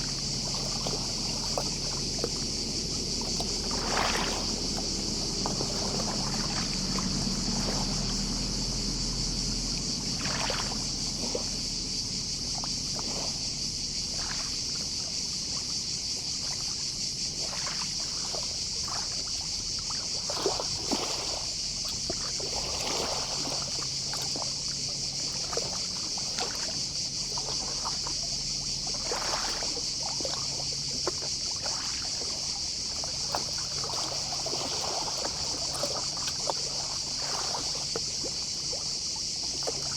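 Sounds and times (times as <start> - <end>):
distant cicadas chorus: 0.0 - 39.9
sea waves lapping at shoreline: 0.0 - 39.9.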